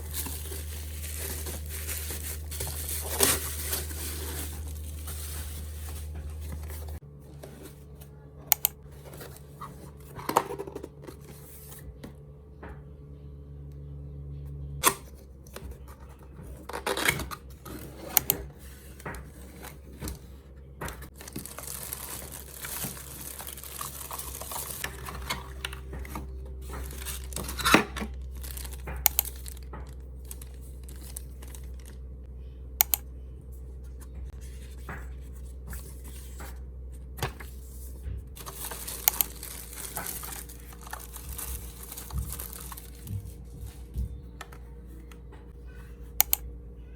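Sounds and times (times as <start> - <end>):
packaging tearing and crinkling: 0.0 - 6.1, 21.1 - 25.2, 26.8 - 32.0, 38.4 - 43.2
steady low hum: 0.0 - 46.9.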